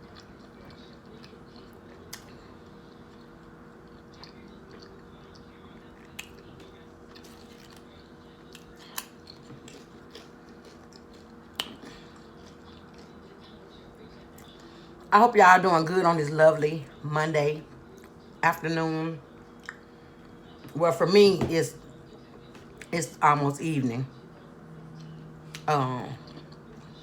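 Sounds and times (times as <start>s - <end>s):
person chewing: 0.0s - 14.7s, 24.9s - 27.0s.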